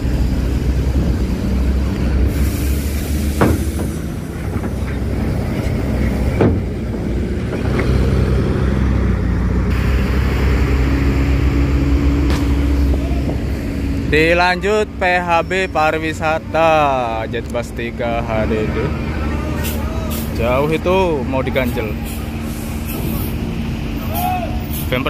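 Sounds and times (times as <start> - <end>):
bus diesel engine rumbling: 0.0 - 25.0
sharp clunks: 3.4 - 5.1, 6.0 - 8.0.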